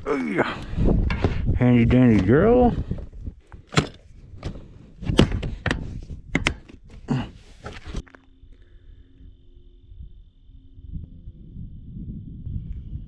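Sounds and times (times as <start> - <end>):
faint steady tone: 8.0 - 13.0.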